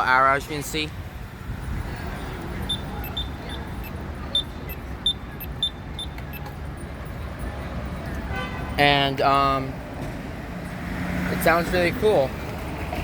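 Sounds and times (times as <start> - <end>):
street traffic rumble: 0.0 - 13.0
crosswalk button beeps: 2.6 - 6.6.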